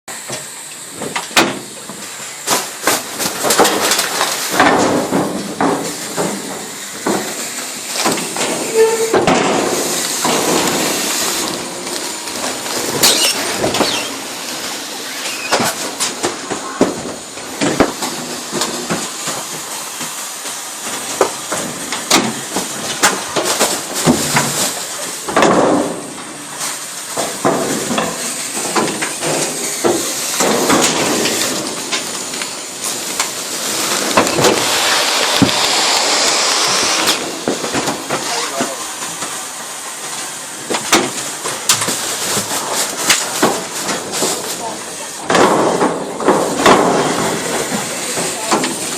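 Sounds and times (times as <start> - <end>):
garbage truck compactor crushing: 0.1 - 48.9
steady hiss: 0.1 - 48.9
bags popping and cracking: 1.1 - 39.4.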